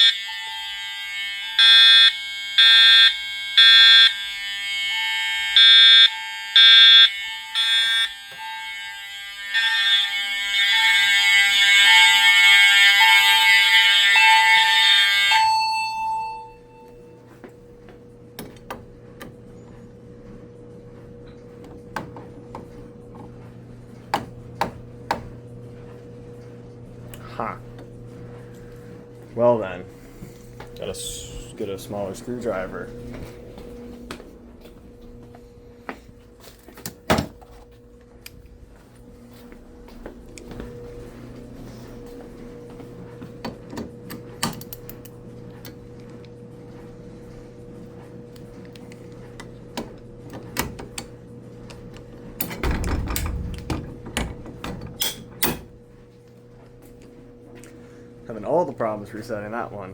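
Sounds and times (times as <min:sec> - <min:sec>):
steady low hum: 0:16.0 - 0:59.9.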